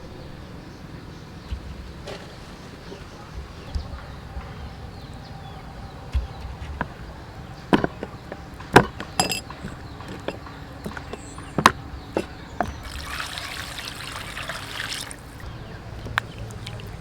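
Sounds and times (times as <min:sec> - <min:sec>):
kitchen utensils clinking: 0:06.8 - 0:14.0
water pouring: 0:12.6 - 0:15.5, 0:16.1 - 0:17.0.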